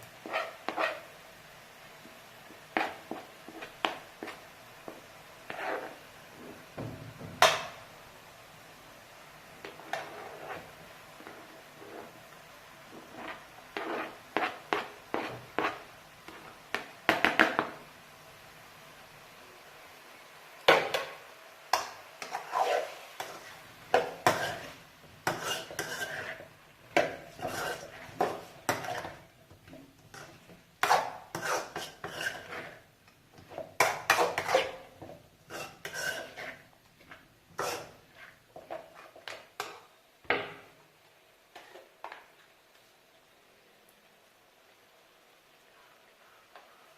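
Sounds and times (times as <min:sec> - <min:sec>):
metal utensil scraping cooking pot: 0:22.2 - 0:29.2, 0:30.1 - 0:32.8, 0:33.4 - 0:34.9, 0:35.5 - 0:39.7.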